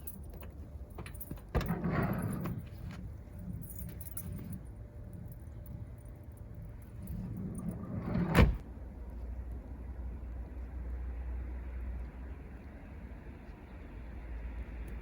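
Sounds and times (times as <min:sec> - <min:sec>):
sliding door rolling on track: 0:01.0 - 0:08.6
door slamming shut: 0:08.0 - 0:08.6.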